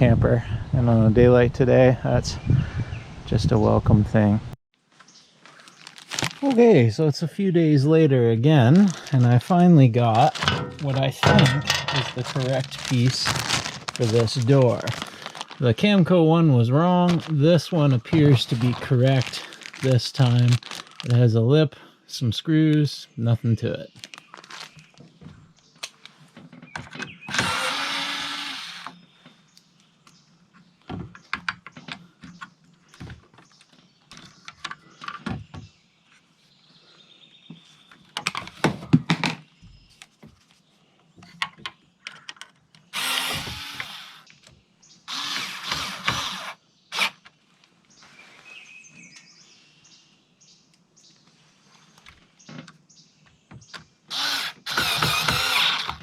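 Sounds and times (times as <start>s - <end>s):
handling clicks and knocks: 10.1s - 15.6s, 30.0s - 35.7s
power drill driving screws: 27.3s - 29.0s, 43.0s - 44.2s, 45.1s - 47.2s, 54.1s - 56.0s.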